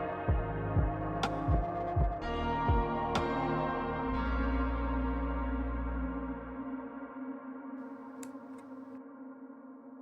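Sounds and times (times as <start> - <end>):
ambient music held notes: 0.0 - 10.0.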